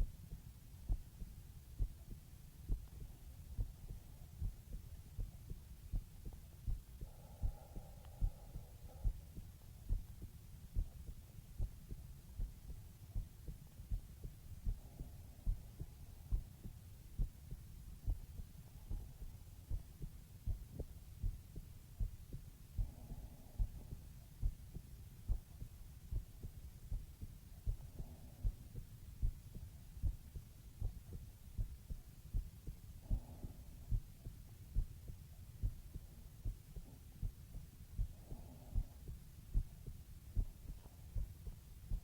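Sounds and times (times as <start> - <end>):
heartbeat thumps: 0.0 - 42.0.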